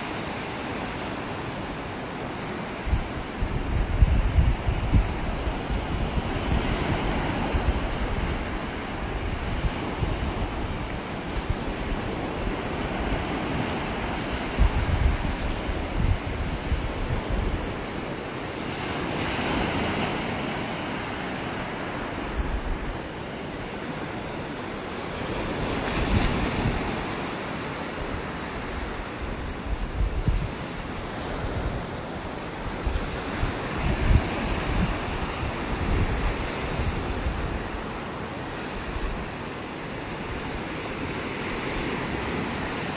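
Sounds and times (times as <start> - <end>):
ocean surf on beach: 0.0 - 42.9
wind gusting on microphone: 1.8 - 42.9.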